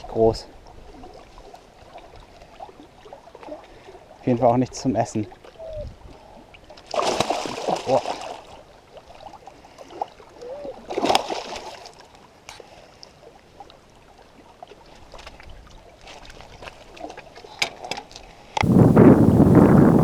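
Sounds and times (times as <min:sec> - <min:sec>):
small water sounds: 0:00.0 - 0:18.7
wind buffeting the microphone: 0:05.6 - 0:06.2, 0:18.6 - 0:20.0.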